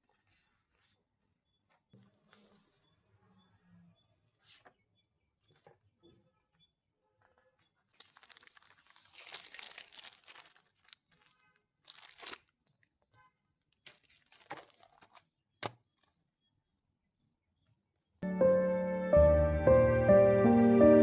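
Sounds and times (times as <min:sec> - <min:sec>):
crinkling handling noise: 0:07.3 - 0:16.2.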